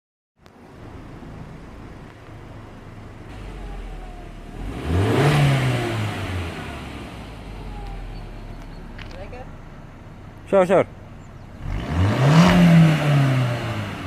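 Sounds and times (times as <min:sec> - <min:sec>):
car engine idling and revving: 0:00.4 - 0:14.0
faint exhaust whistle: 0:07.2 - 0:09.0.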